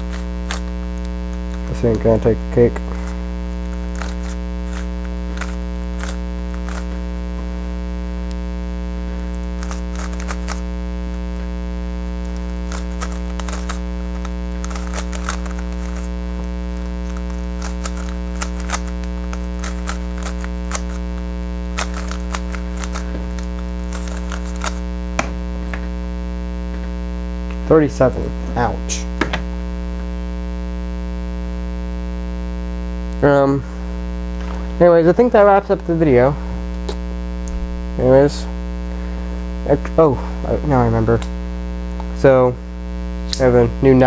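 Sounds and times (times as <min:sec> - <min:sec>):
plastic speed cube clicking: 0:00.0 - 0:02.0, 0:02.7 - 0:07.0, 0:09.5 - 0:10.8, 0:12.2 - 0:24.9
electrical hum: 0:00.0 - 0:44.0.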